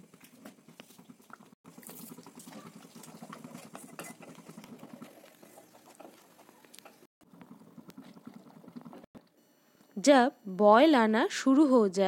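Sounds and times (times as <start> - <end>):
gravy bubbling and popping: 0.0 - 9.4.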